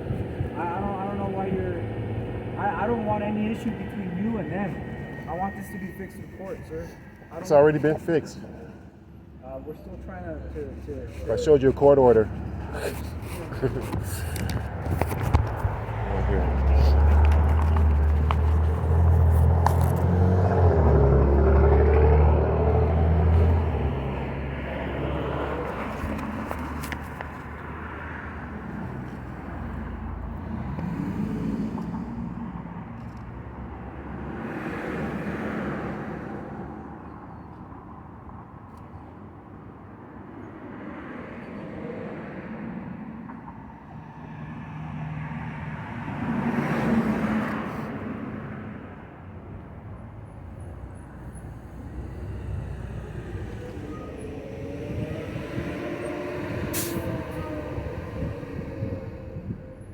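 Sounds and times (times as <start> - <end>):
car engine passing: 0.0 - 8.9, 9.6 - 33.0, 50.2 - 59.9
heavy vehicle rumbling past: 0.0 - 33.0, 50.4 - 59.9.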